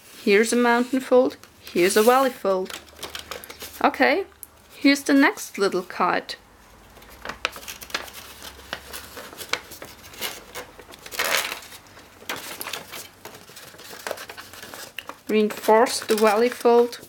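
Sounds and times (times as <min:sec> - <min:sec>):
paper crinkling and rustling: 0:01.8 - 0:03.9, 0:06.8 - 0:17.0
crisp paper ticks: 0:12.3 - 0:17.0.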